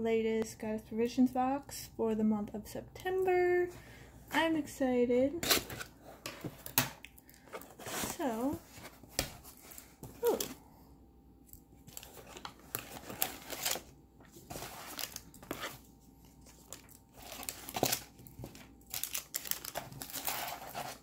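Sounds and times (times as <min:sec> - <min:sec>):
packaging crinkling and tearing: 0:11.8 - 0:21.0.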